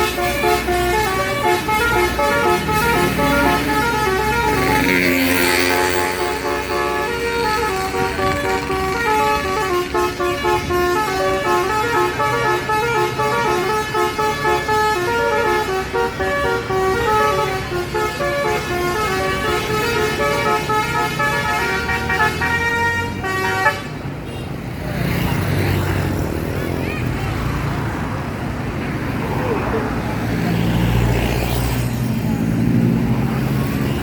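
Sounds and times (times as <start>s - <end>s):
multi-tone bus horn melody: 0.0s - 25.4s, 33.4s - 34.0s.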